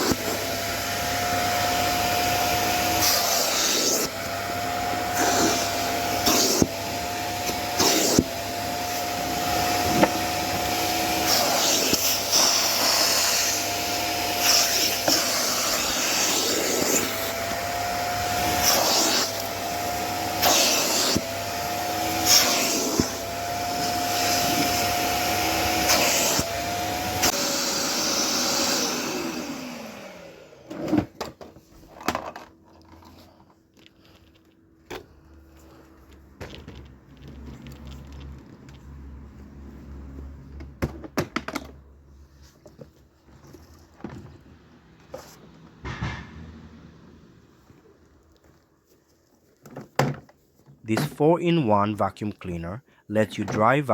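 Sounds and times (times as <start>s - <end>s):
shop vacuum running: 0.0s - 33.4s
knocks: 45.8s - 46.4s.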